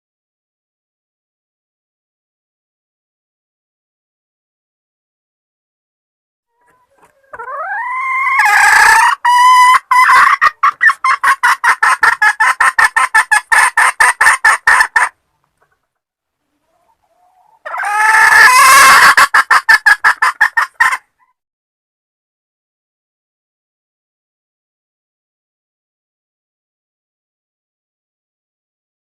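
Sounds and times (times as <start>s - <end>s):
hen clucking: 6.5s - 21.4s.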